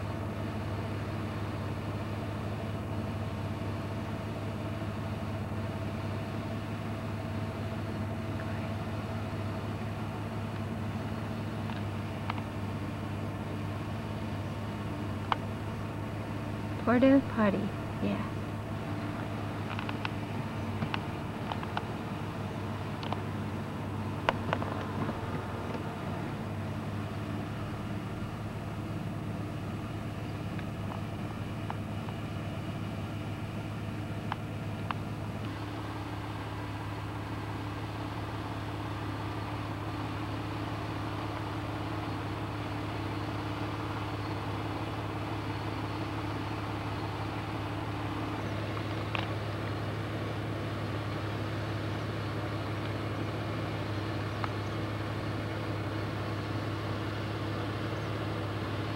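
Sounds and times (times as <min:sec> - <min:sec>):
vehicle engine droning: 0:00.0 - 0:58.9.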